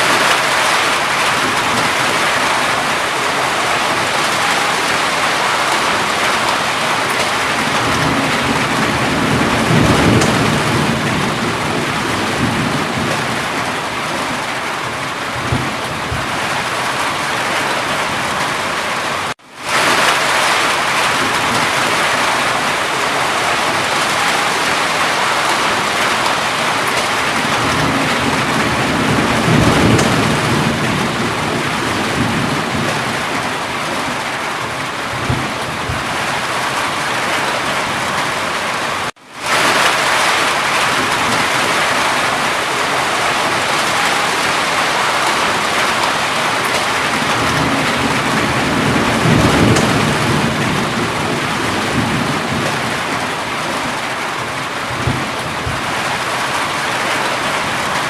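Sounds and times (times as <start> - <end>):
heavy rainfall hissing: 0.0 - 58.0.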